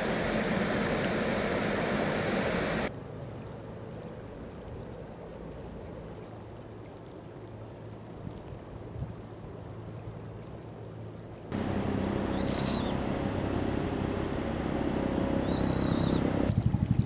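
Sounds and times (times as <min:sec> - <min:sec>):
steady low hum: 0:11.5 - 0:16.5
bird harsh high calls: 0:11.6 - 0:16.5.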